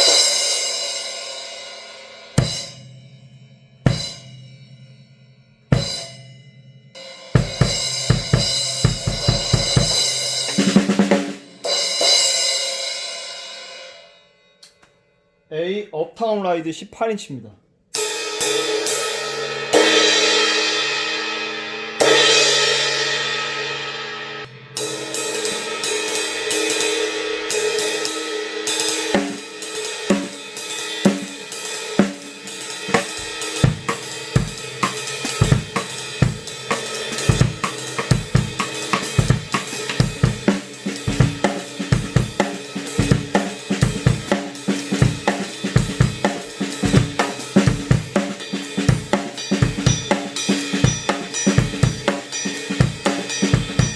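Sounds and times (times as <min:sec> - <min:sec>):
drum kit groove: 0:00.0 - 0:03.0, 0:03.8 - 0:04.5, 0:05.7 - 0:06.3, 0:07.0 - 0:12.9, 0:24.4 - 0:53.9.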